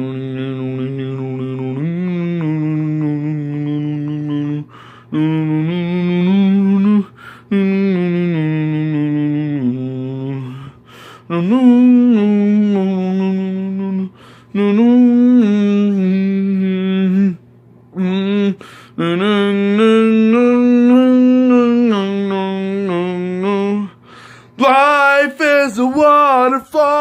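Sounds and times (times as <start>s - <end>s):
man humming a slow melody: 0.0s - 25.2s
breaths: 4.7s - 5.1s, 7.1s - 7.5s, 10.4s - 11.3s, 14.1s - 14.6s, 18.6s - 19.0s, 23.9s - 24.6s.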